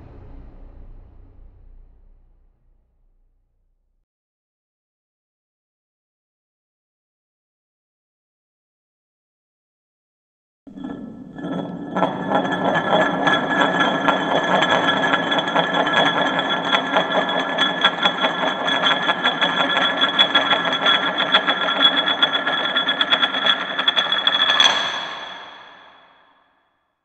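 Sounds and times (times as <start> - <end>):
metal weight plate rattling: 10.7 - 25.9.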